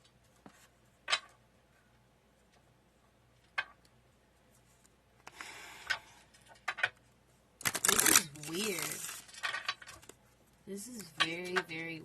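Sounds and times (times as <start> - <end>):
card rustling: 7.6 - 10.2.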